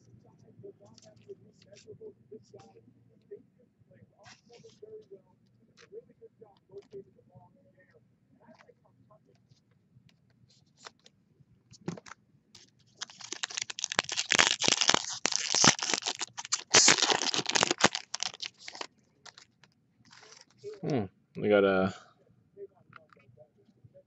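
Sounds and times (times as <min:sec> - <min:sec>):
wrapper crinkling and tearing: 0:13.0 - 0:19.5, 0:20.1 - 0:20.6.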